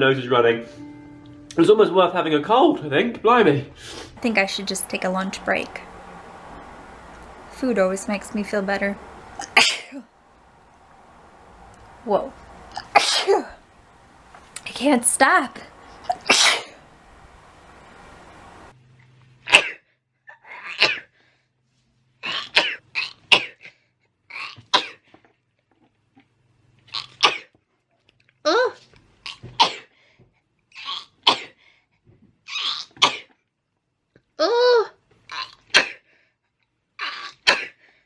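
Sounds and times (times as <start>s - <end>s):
person sneezing: 12.9s - 13.6s, 16.0s - 16.8s, 35.7s - 36.1s, 37.0s - 37.8s.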